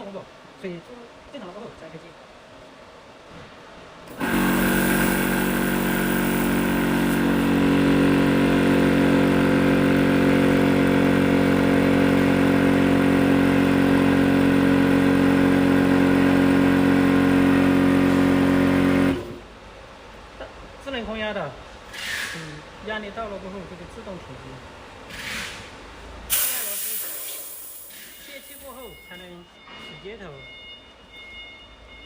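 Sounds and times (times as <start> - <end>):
air compressor running: 4.1 - 19.4, 26.3 - 29.0.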